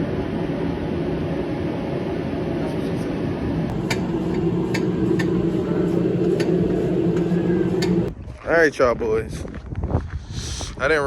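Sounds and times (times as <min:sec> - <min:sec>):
car interior drone: 0:03.1 - 0:08.1.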